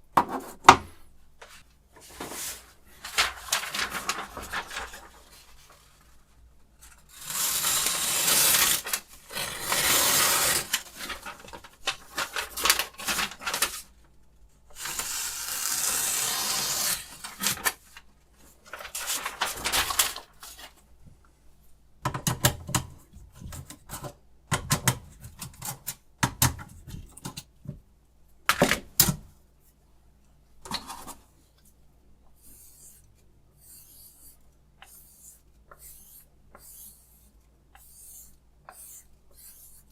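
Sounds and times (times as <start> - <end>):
faint scratches: 32.4 - 39.9.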